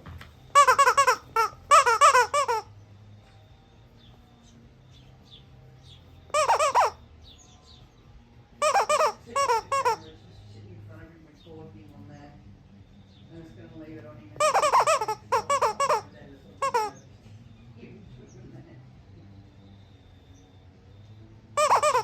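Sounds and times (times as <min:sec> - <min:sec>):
squeaky toy squeaks: 0:00.5 - 0:02.7, 0:06.3 - 0:07.0, 0:08.6 - 0:10.1, 0:14.4 - 0:17.0, 0:21.6 - 0:22.0.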